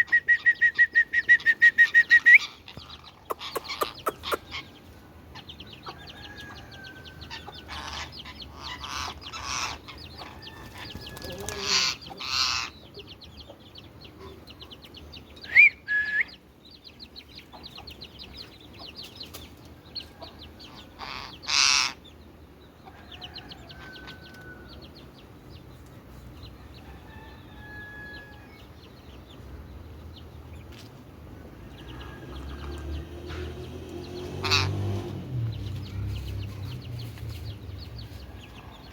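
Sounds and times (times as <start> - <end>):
rising bird whistle: 0.0 - 2.5, 15.4 - 16.4
harsh bird squawks: 0.0 - 4.7, 21.0 - 22.0, 34.4 - 34.9
birds chirping: 0.0 - 38.9.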